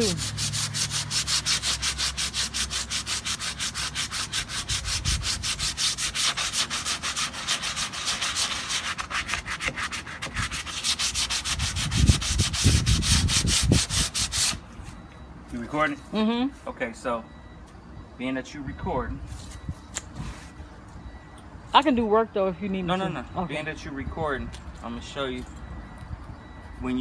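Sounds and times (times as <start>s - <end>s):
sandpaper scratching filler: 0.0s - 14.6s.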